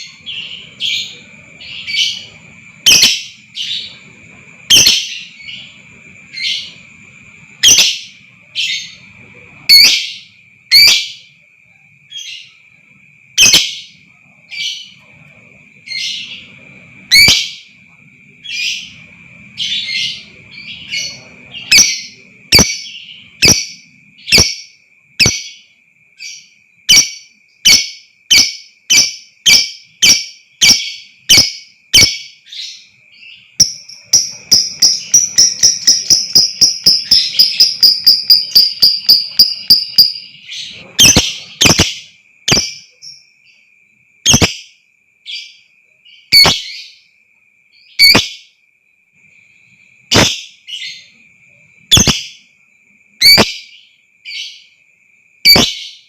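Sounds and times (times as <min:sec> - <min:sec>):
lovebird shrill calls: 0:02.8 - 0:03.4, 0:04.7 - 0:05.3, 0:07.6 - 0:08.0, 0:13.4 - 0:13.8, 0:17.1 - 0:17.6, 0:26.9 - 0:32.3, 0:33.6 - 0:40.3, 0:41.0 - 0:42.8, 0:44.3 - 0:44.6, 0:46.3 - 0:46.8, 0:48.0 - 0:48.3, 0:51.9 - 0:52.4, 0:53.2 - 0:53.7, 0:55.5 - 0:55.8
rapid chattering bird trill: 0:33.4 - 0:42.8
thin high tone: 0:33.6 - 0:41.8.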